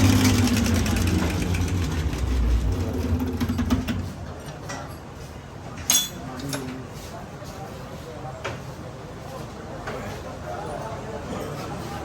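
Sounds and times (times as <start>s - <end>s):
diesel engine idling: 0.0s - 4.2s.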